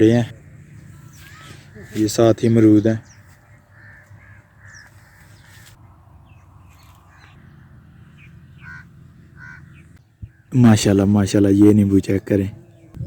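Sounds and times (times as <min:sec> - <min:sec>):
small birds chirping: 0:00.0 - 0:13.0
crow cawing: 0:00.6 - 0:10.5.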